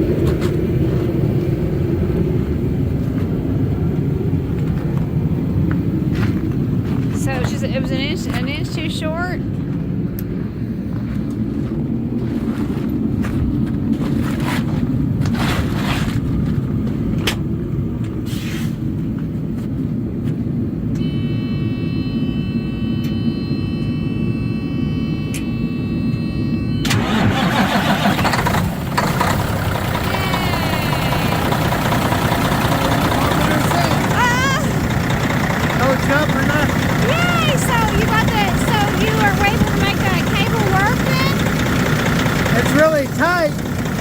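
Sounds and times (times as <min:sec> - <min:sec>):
diesel truck engine starting: 0:00.0 - 0:12.2, 0:26.8 - 0:44.0.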